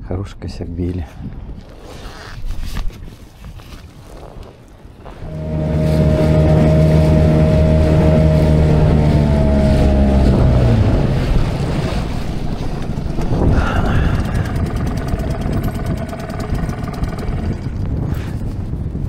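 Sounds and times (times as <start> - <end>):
wind: 0.0 - 19.0
water noise: 4.4 - 18.7
boat engine running: 5.1 - 18.6.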